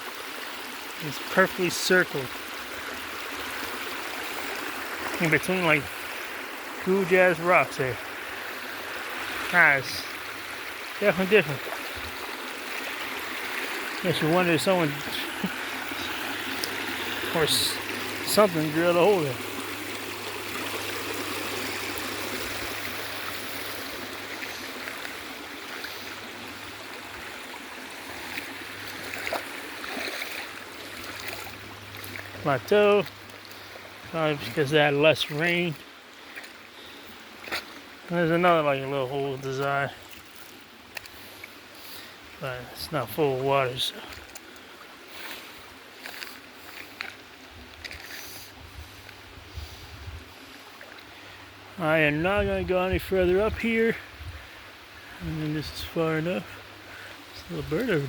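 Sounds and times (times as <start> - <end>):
stream running over rocks: 0.0 - 58.0
light clicks and scuffs: 47.8 - 49.2.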